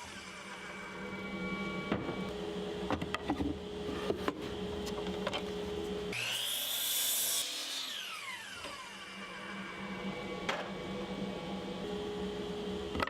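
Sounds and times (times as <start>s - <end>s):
power saw cutting wood: 0.0s - 2.4s, 6.1s - 10.8s.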